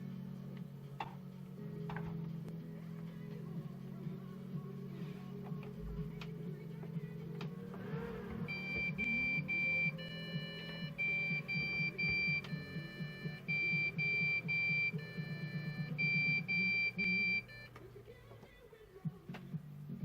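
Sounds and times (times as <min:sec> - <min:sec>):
low steady hum: 0:00.0 - 0:20.0
computer speaker beep code: 0:08.4 - 0:17.7.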